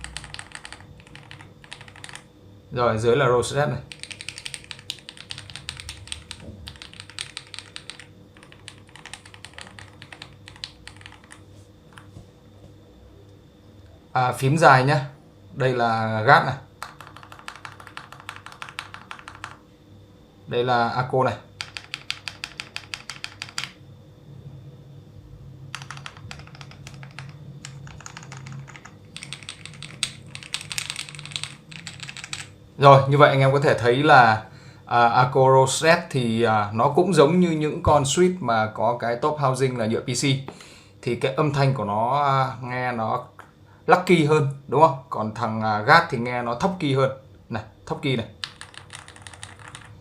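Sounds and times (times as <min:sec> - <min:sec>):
mechanical keyboard typing: 0:00.0 - 0:02.3, 0:03.9 - 0:11.4, 0:16.8 - 0:19.6, 0:21.6 - 0:23.8, 0:25.7 - 0:32.5, 0:48.4 - 0:50.0.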